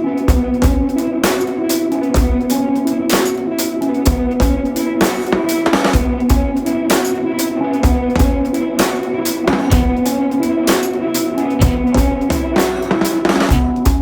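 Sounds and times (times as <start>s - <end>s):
drum kit beat: 0.0s - 14.0s
instrumental notes: 0.0s - 14.0s.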